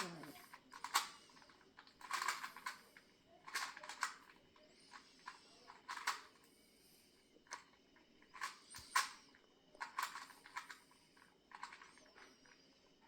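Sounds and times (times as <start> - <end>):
plastic puzzle cube clicking: 0.0 - 2.8, 3.4 - 6.4, 9.8 - 10.8, 11.5 - 12.0.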